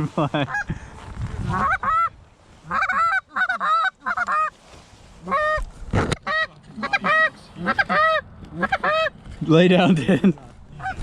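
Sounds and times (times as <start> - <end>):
goose honking and clucking: 1.4 - 4.5, 5.2 - 9.2.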